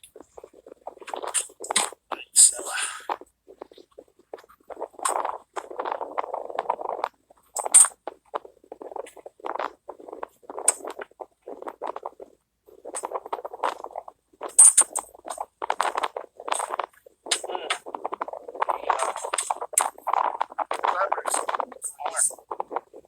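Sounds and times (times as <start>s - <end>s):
rustling and scraping: 0.0s - 23.0s.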